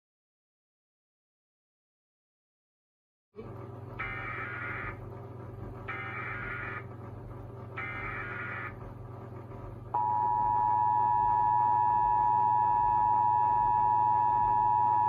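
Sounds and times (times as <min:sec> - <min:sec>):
steady two-tone attention signal: 0:10.0 - 0:15.0.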